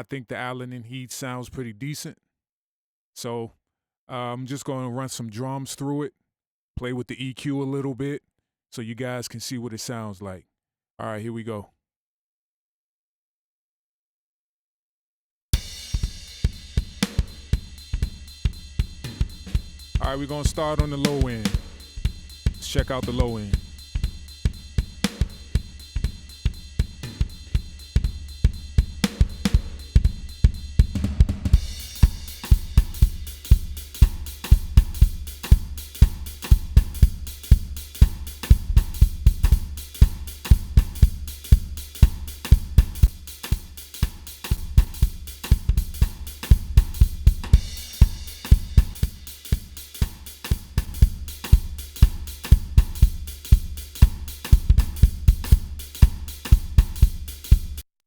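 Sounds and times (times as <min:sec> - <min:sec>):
drum kit playing a steady beat: 0:15.6 - 0:58.0.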